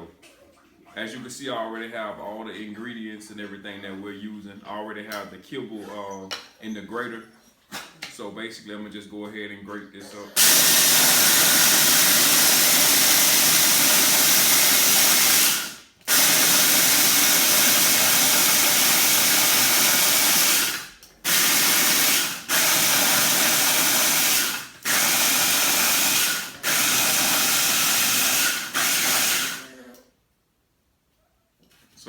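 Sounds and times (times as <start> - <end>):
grinder pulverising dry kibble: 10.4 - 29.8.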